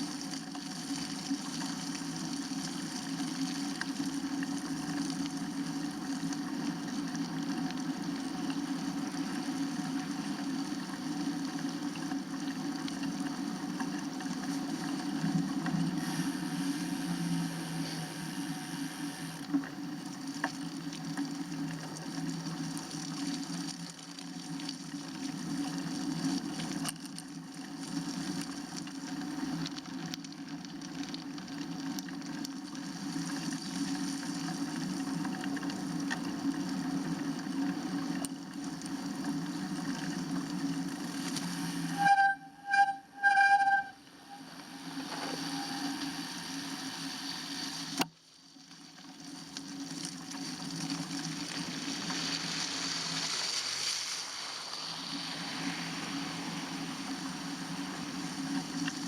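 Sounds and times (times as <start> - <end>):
tyres hissing on wet road: 15.9 - 19.4, 41.1 - 42.0, 44.2 - 48.0, 51.5 - 59.0.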